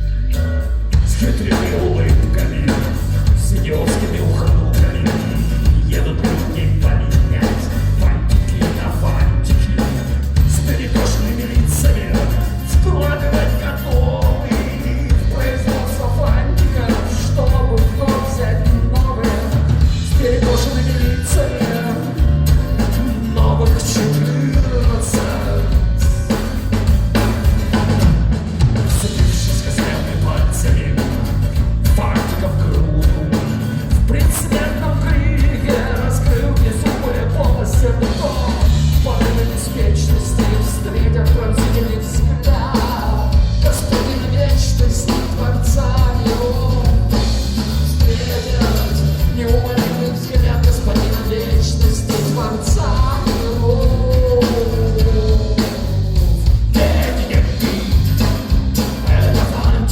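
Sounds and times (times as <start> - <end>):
person singing: 0.0 - 26.4, 28.9 - 59.9
live rock band playing: 0.0 - 59.9.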